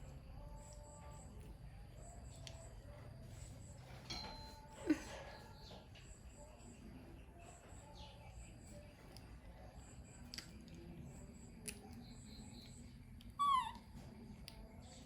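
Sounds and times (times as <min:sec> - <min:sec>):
monkey squealing: 0:13.4 - 0:13.8.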